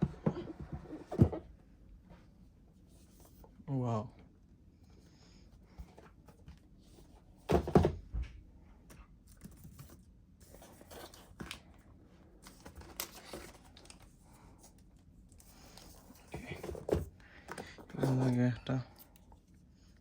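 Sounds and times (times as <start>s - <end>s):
cardboard and paper rustling: 9.1s - 19.4s.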